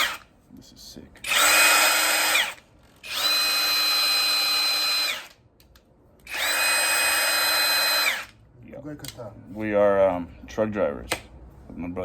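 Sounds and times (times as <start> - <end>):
impact wrench motor whine: 0.0 - 0.2, 1.2 - 5.4, 6.2 - 8.4.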